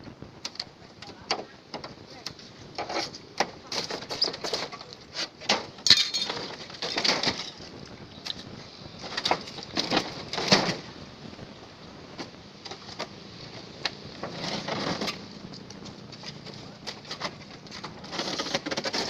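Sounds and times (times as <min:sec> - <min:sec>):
knocks and metal clinks: 0:05.8 - 0:07.6.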